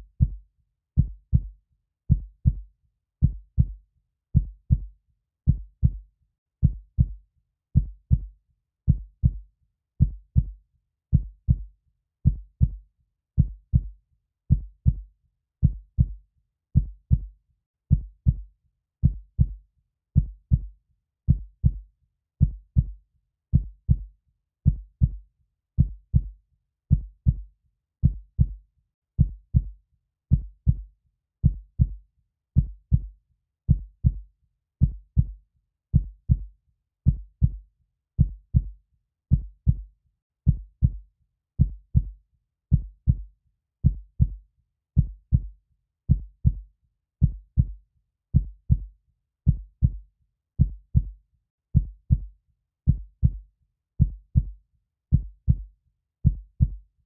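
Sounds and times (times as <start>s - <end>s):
heartbeat double thump: 52.9s - 53.4s.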